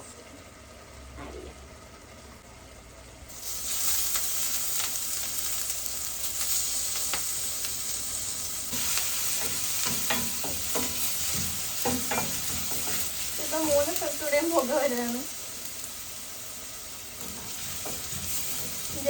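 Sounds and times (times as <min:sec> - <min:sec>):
paste sizzling in hot oil: 0:03.3 - 0:19.0
spoon scraping a pan: 0:08.7 - 0:14.0.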